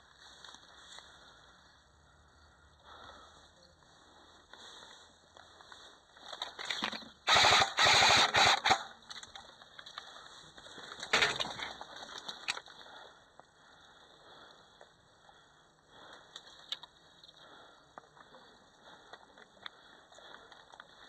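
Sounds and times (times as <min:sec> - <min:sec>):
airsoft rifle bursts: 0:07.2 - 0:09.0.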